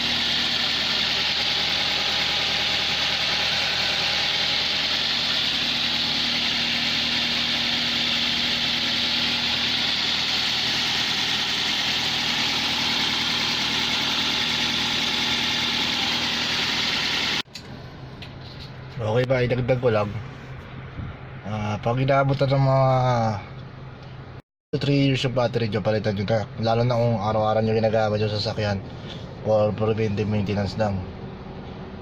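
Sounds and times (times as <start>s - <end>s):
car engine idling: 0.0s - 17.4s.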